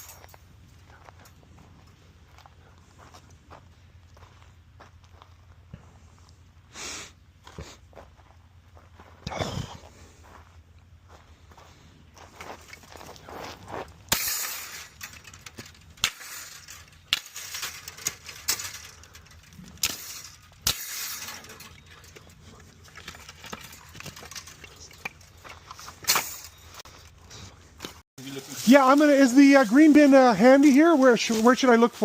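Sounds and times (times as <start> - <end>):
objects clattering: 0.0 - 0.5, 12.4 - 31.5
rustling: 11.7 - 32.0.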